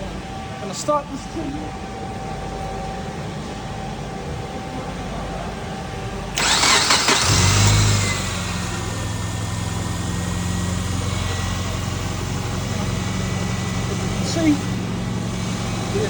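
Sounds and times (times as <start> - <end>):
car engine starting and idling: 5.4 - 16.0.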